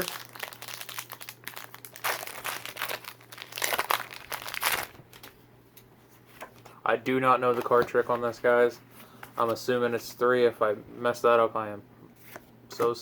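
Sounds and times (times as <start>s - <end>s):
foil wrapper crinkling and tearing: 0.0s - 5.3s.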